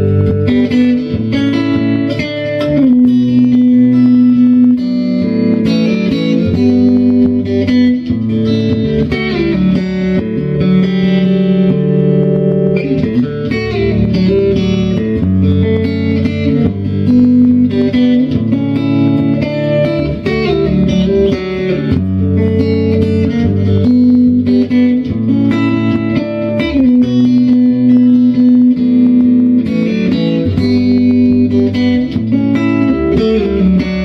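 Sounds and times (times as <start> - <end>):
plucked electric guitar melody: 0.0 - 34.0
sustained bass notes: 0.0 - 34.0.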